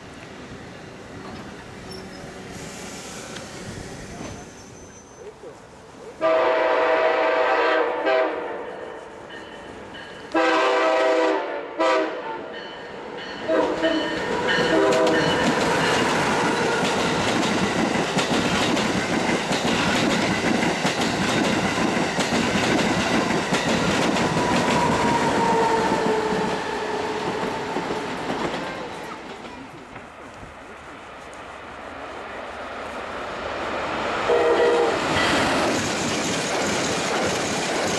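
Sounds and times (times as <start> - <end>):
train passing with rolling roar: 0.0 - 37.9
train horn: 6.2 - 9.1, 10.3 - 12.6, 13.4 - 15.4, 24.3 - 27.8, 34.3 - 35.2.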